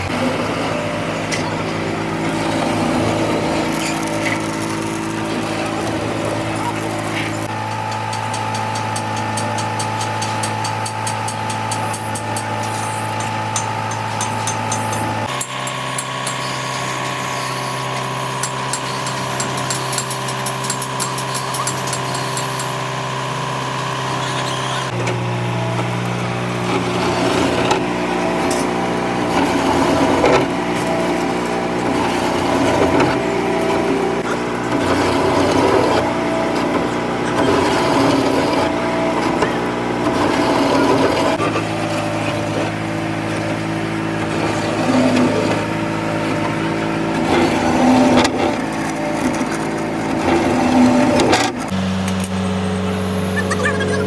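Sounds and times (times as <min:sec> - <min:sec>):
machine humming: 0:00.0 - 0:54.0
rough scraping: 0:02.2 - 0:07.5, 0:47.1 - 0:51.8.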